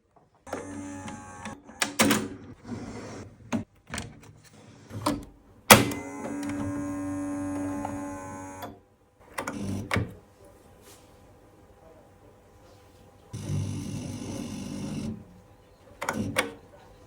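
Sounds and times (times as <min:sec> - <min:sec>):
mechanical clicks and clunks: 0:00.4 - 0:02.6, 0:03.5 - 0:10.2, 0:16.0 - 0:16.6
electrical hum: 0:04.8 - 0:17.0.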